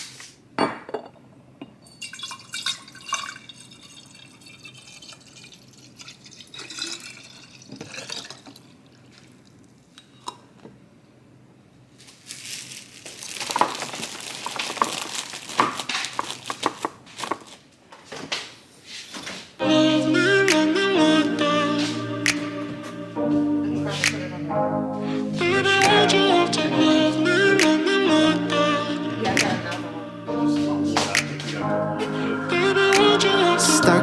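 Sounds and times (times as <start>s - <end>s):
liquid pouring and splashing: 1.9s - 9.8s.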